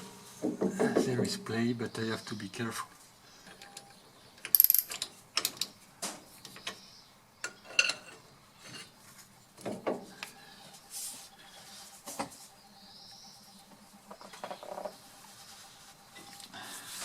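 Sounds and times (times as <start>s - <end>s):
metal tool clicks and clanks: 7.4s - 8.9s.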